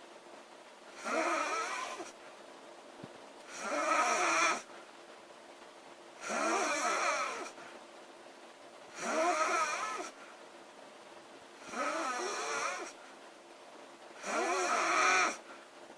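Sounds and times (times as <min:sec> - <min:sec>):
woman snoring: 0:01.0 - 0:02.1, 0:03.5 - 0:04.7, 0:06.2 - 0:07.6, 0:08.9 - 0:10.2, 0:11.6 - 0:13.0, 0:14.2 - 0:15.4.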